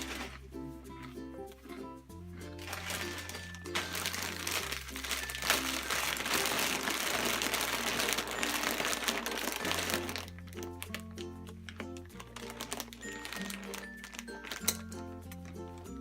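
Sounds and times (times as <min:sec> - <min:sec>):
potato chip bag crinkling: 0:00.0 - 0:01.1, 0:02.4 - 0:15.6
background music with bass: 0:00.0 - 0:08.1.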